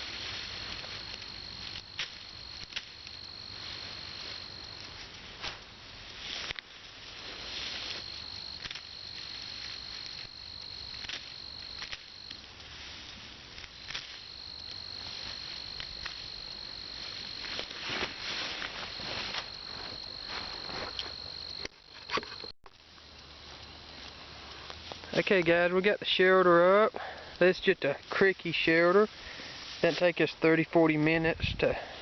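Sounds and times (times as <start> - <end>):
high-pitched insect trill: 0.0 - 23.1
dry brush rustling and snapping: 0.0 - 25.5.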